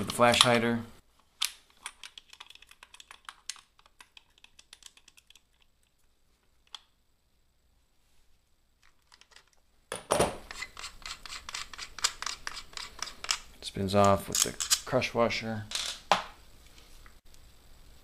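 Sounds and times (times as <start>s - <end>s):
metal clicking and scraping: 10.4s - 14.9s.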